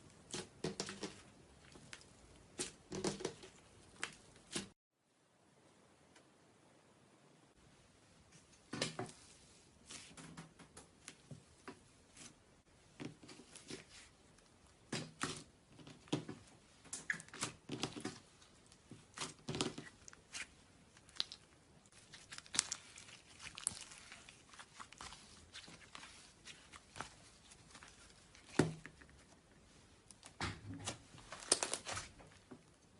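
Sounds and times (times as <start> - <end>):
slime crackling and popping: 19.1 - 27.2.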